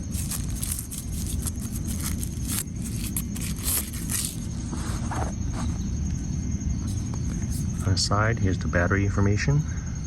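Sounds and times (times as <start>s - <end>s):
screwdriver scraping and rustling: 0.0s - 5.4s
low background rumble: 0.0s - 8.6s.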